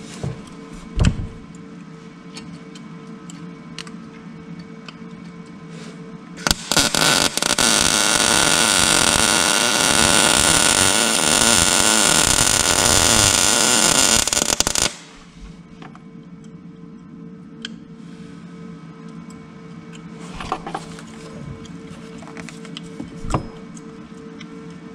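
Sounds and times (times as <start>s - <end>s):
welding arc crackling: 6.4s - 15.4s.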